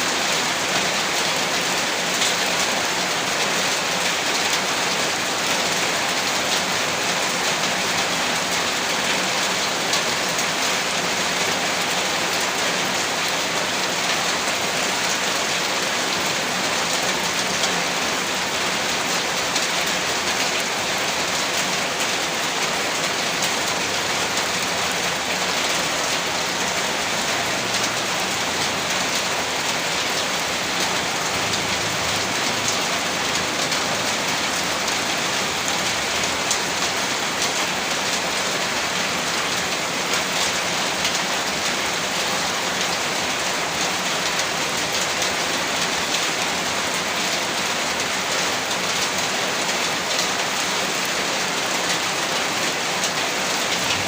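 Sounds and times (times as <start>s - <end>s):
heavy rain hissing: 18.0s - 44.7s.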